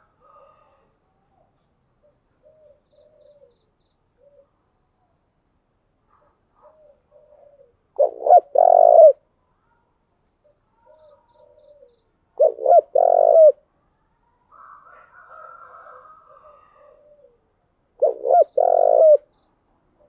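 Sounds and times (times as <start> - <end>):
dove cooing: 2.1 - 3.6, 6.6 - 9.2, 10.9 - 13.6, 15.6 - 19.3.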